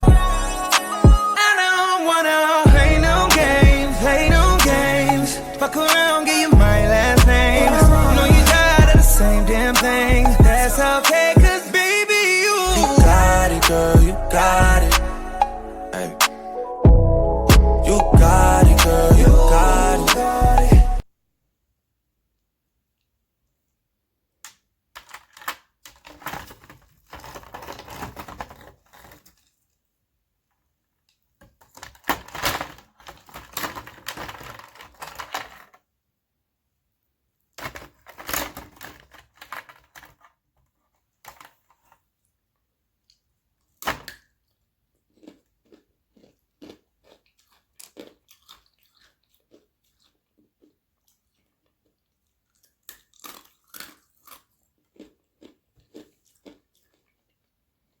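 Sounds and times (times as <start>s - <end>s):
ice sheets crunching and cracking: 0.7s - 13.8s.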